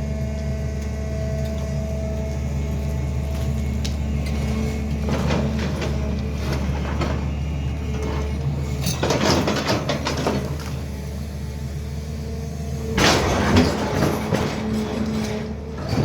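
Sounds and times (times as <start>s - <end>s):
excavator diesel engine running: 0.0s - 16.0s.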